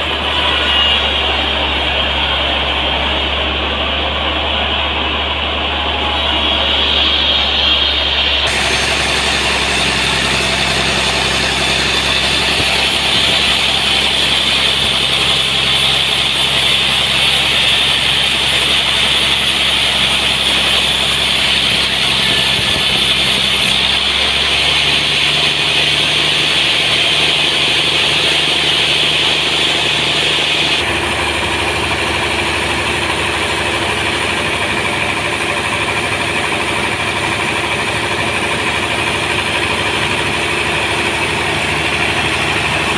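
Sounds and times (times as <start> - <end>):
sawmill sawing a log: 0.0 - 42.9.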